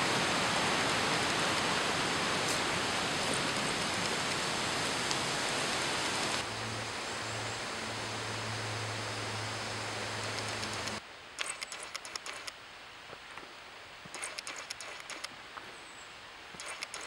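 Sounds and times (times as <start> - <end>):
waterfall rushing: 0.0 - 7.0.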